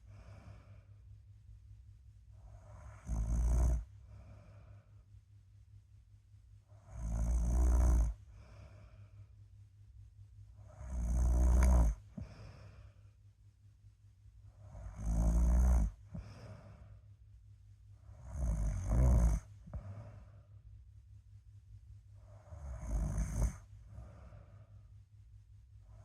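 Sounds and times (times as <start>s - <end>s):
soft breath: 0.0s - 1.2s, 3.9s - 5.5s, 8.1s - 9.5s, 11.6s - 14.9s, 15.9s - 18.2s, 19.4s - 20.7s, 23.5s - 26.0s
loud snores: 2.5s - 3.9s, 6.9s - 8.6s, 10.7s - 12.6s, 14.6s - 16.7s, 18.1s - 20.1s, 22.4s - 24.2s.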